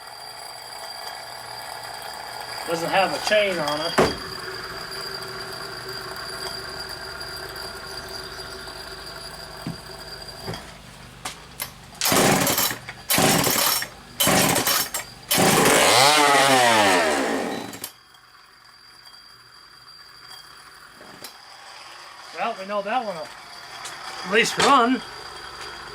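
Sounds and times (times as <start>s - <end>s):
two-stroke chainsaw engine revving: 12.0s - 17.9s.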